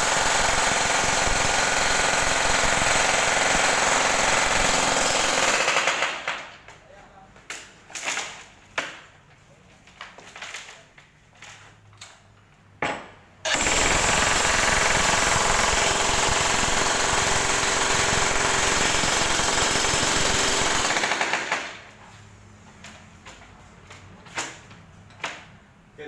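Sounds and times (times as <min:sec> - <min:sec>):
jackhammer hammering: 0:00.0 - 0:06.5, 0:13.5 - 0:21.9.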